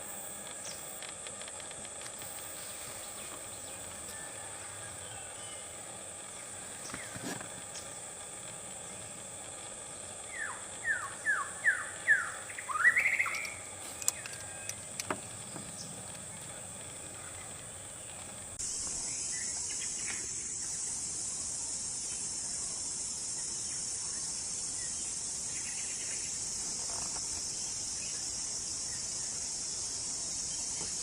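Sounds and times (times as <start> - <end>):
high insect drone: 0.0 - 31.0
bird calling: 10.0 - 18.5.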